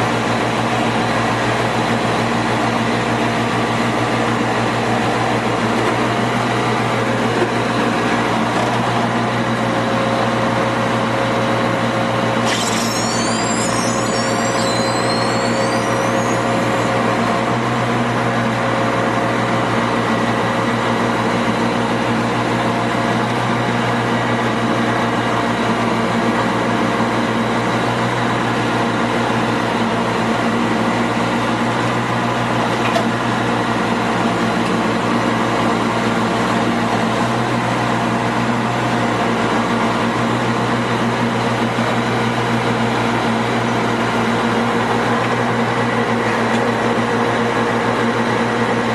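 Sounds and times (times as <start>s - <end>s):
drill rig engine hum: 12.2s - 23.4s
high squeals: 12.4s - 17.5s.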